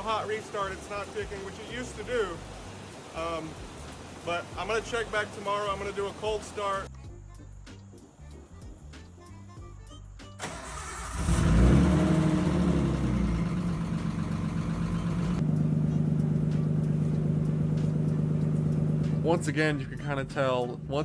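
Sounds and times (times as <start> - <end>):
car engine starting and idling: 10.4 - 21.0.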